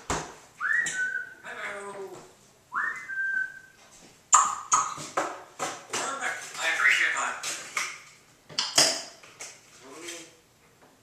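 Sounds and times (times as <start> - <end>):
parrot whistling: 0.6 - 1.5, 2.7 - 3.8, 6.6 - 7.2.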